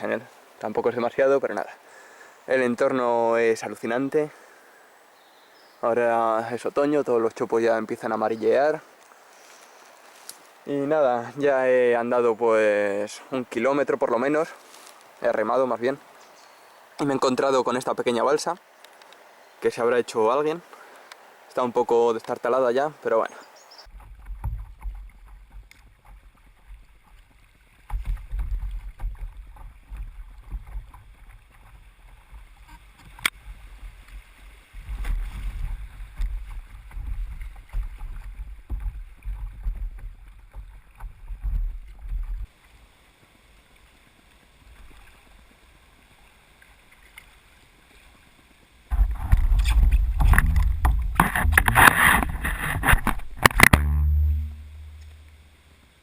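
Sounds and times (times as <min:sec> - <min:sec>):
paddle and hull in water: 0:00.0 - 0:56.0
wind rumble on microphone: 0:33.3 - 0:42.5, 0:48.9 - 0:55.0.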